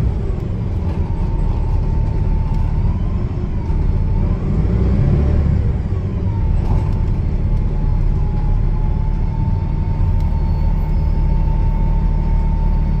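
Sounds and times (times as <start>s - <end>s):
bus diesel engine rumbling: 0.0s - 13.0s.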